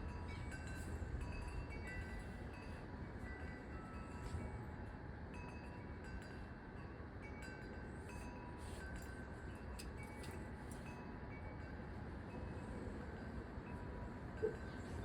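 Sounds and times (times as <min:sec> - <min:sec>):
wind chimes ringing: 0:00.0 - 0:15.0.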